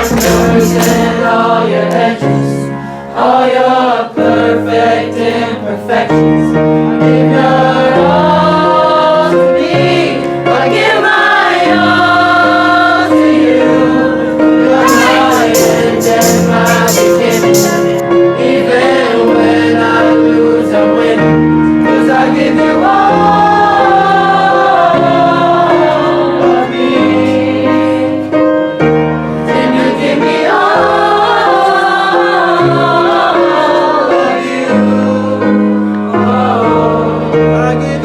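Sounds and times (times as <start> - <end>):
held musical accompaniment: 0.0 - 6.0, 7.0 - 21.1
choir singing sustained chords: 0.0 - 28.4, 29.3 - 38.0.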